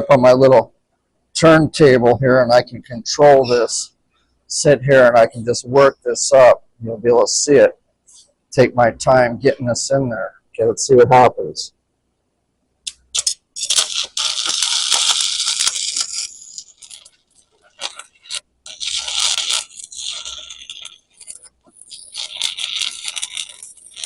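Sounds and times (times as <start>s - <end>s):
welding arc crackling: 12.9s - 24.0s.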